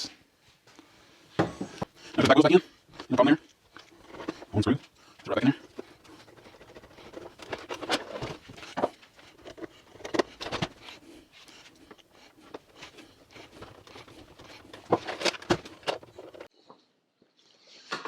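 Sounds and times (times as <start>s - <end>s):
pool cleaner parts clicking: 5.2s - 10.9s, 13.4s - 16.5s.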